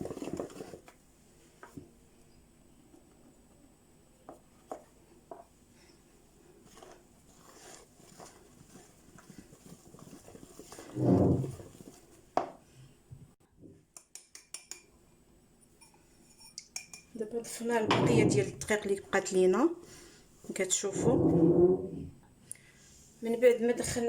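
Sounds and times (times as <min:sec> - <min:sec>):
utensil tapping mixing bowl: 0:14.0 - 0:14.9, 0:15.8 - 0:18.8.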